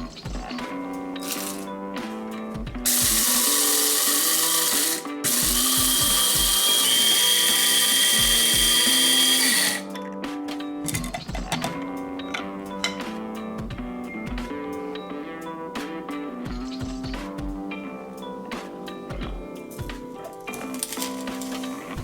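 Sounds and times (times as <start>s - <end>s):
background music: 0.0s - 22.0s
spice grinder motor whirring: 1.2s - 1.7s, 2.8s - 9.9s, 20.5s - 22.0s.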